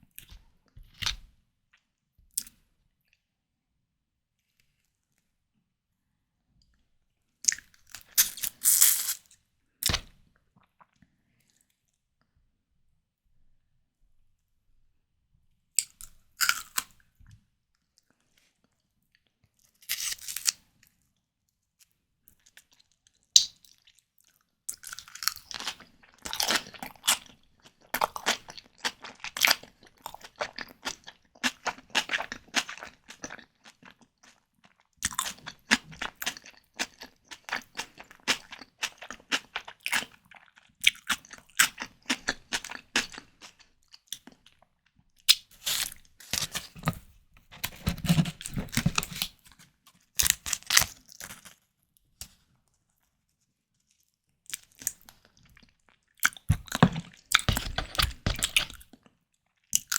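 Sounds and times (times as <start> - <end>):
chewing and crunching: 22.3 - 51.7, 53.8 - 59.9.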